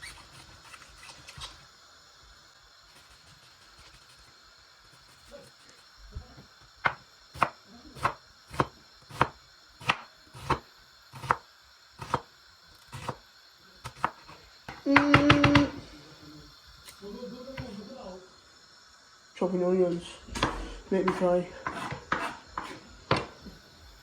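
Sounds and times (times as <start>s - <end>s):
knife chopping on cutting board: 6.8s - 10.6s, 11.2s - 11.4s, 12.0s - 12.3s, 12.9s - 13.2s, 13.8s - 15.8s, 20.4s - 23.5s.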